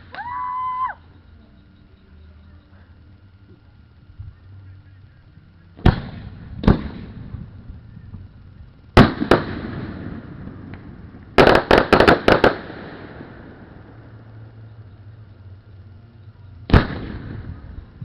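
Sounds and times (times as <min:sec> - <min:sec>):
fireworks bangs with echo: 0:05.8 - 0:07.5, 0:09.0 - 0:13.6, 0:16.7 - 0:18.0.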